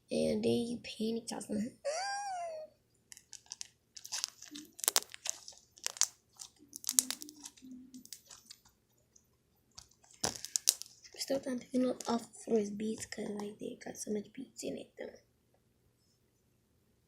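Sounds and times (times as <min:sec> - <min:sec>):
crunchy slime crackling: 0:03.1 - 0:08.7, 0:09.8 - 0:12.3.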